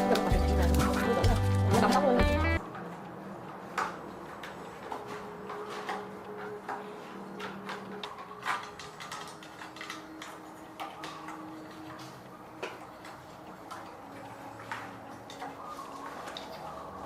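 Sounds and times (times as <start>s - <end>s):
hand tools clicking and tapping: 0.0s - 17.0s.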